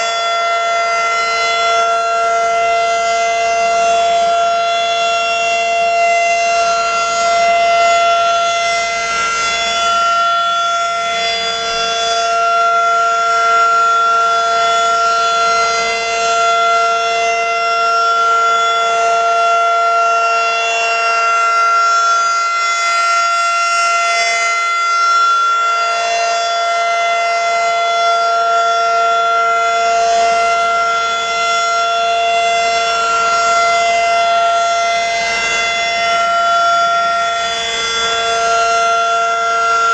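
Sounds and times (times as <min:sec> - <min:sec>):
lower siren tone: 0:00.0 - 0:39.9
warning siren steady tone: 0:00.0 - 0:39.9.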